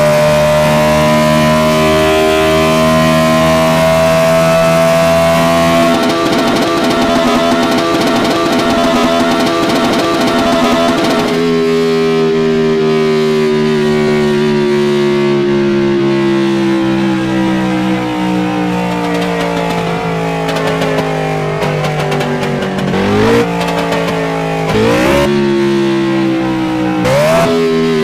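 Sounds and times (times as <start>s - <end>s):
synthesised car engine effect: 0.0s - 28.0s.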